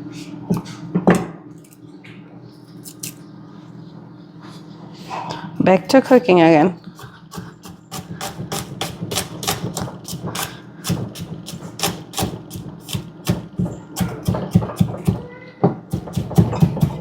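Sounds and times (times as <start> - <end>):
knife chopping on cutting board: 7.0 - 15.2, 15.9 - 17.0.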